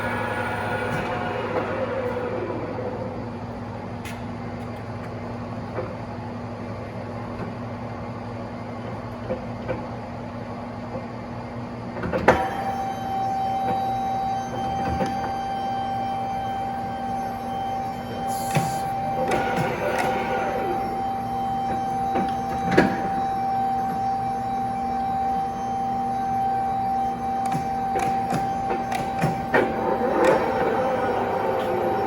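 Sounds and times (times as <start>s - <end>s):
lathe spindle whine: 0.0s - 4.0s, 12.2s - 32.0s
high gear whine: 0.0s - 9.2s, 10.1s - 32.0s
lathe drive hum: 0.0s - 32.0s.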